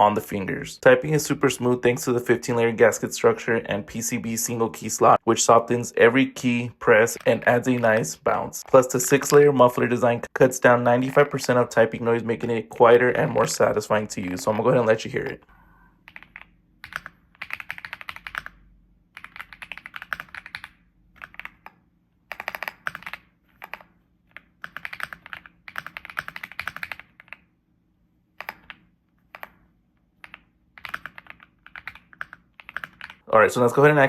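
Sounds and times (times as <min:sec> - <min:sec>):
mechanical keyboard typing: 0:16.1 - 0:27.5, 0:28.3 - 0:33.2.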